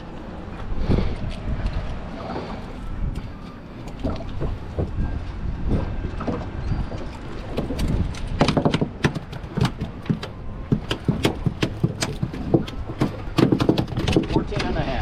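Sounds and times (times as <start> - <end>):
knocks and clatter on boat: 3.0 - 15.0.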